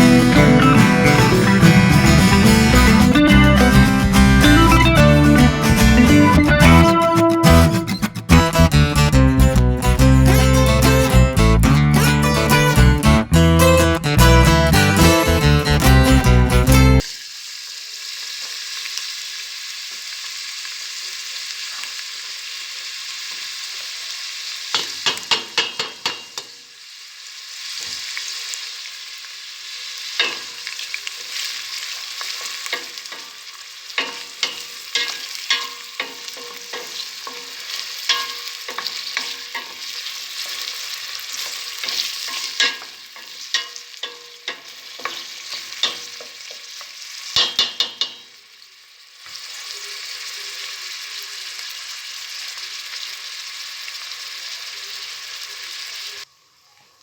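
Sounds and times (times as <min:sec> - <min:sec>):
food sizzling in a hot pan: 0:15.0 - 0:57.0.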